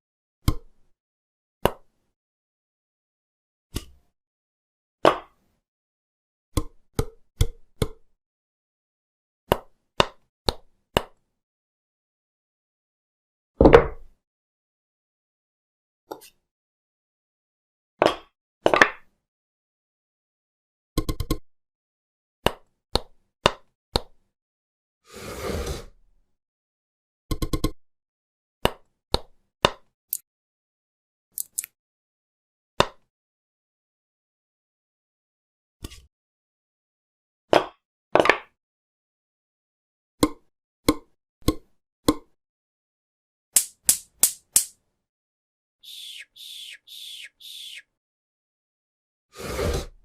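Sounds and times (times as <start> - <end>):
sharp tool taps: 43.6 - 44.7.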